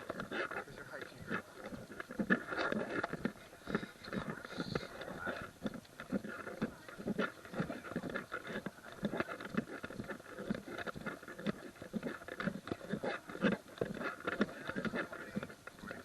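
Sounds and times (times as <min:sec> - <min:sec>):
footsteps on gravel: 0:00.0 - 0:16.0.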